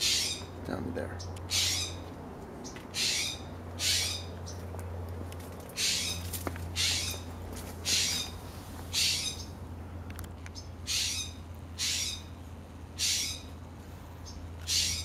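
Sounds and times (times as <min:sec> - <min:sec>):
harsh raspy bird call: 0:00.0 - 0:00.6, 0:01.5 - 0:02.0, 0:02.9 - 0:04.4, 0:05.8 - 0:06.2, 0:06.8 - 0:09.5, 0:10.8 - 0:12.3, 0:13.0 - 0:13.5, 0:14.6 - 0:15.0
steady low hum: 0:00.0 - 0:15.0.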